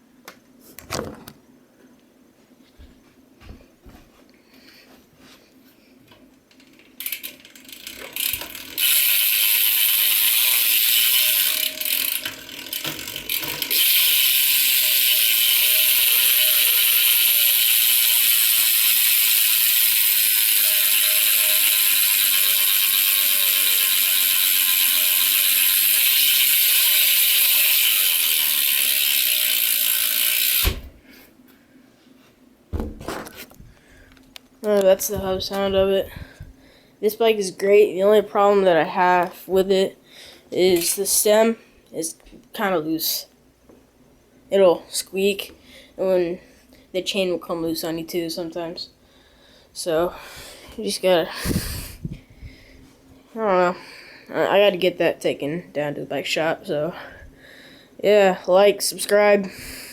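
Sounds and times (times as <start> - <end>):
bike hub ratcheting clicks: 6.5 - 30.8.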